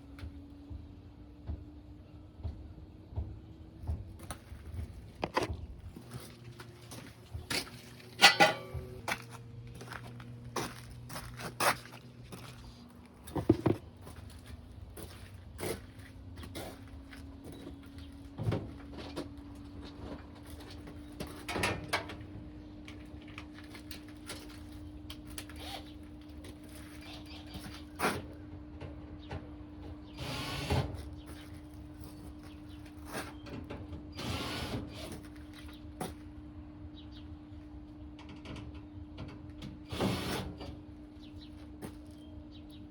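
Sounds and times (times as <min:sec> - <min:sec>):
steady low hum: 0:00.0 - 0:40.0
parts and tools knocking and rattling: 0:04.3 - 0:06.5, 0:07.2 - 0:09.3, 0:13.3 - 0:14.0
metal parts clattering: 0:08.1 - 0:08.7
rasping mechanical bursts: 0:30.1 - 0:31.0, 0:34.1 - 0:35.3, 0:39.8 - 0:40.6.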